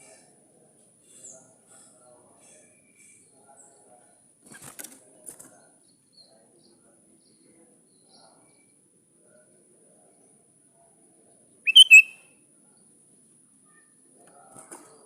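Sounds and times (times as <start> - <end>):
bird calls: 11.7 - 12.2.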